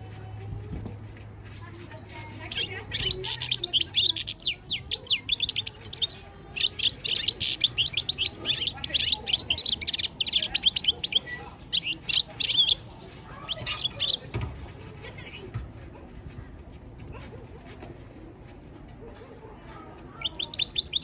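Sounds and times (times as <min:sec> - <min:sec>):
goldfinch singing: 0:02.2 - 0:14.3, 0:20.2 - 0:21.0.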